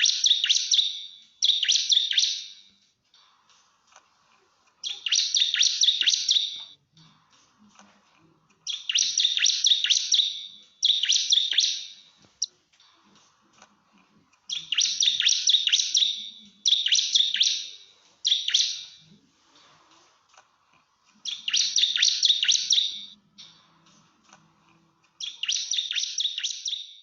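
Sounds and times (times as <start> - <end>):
bird rapid sharp high notes: 0.0 - 2.6, 4.8 - 6.8, 8.7 - 12.1, 14.5 - 19.0, 21.3 - 23.5, 25.2 - 26.9.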